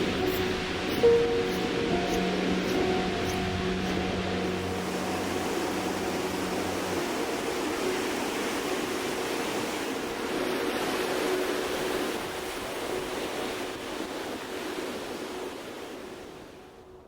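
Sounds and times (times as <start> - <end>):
ocean surf washing onto beach: 0.0 - 16.9.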